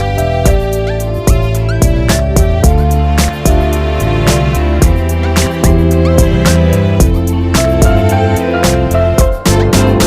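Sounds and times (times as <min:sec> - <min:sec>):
instrumental music with steady beat: 0:00.0 - 0:10.0.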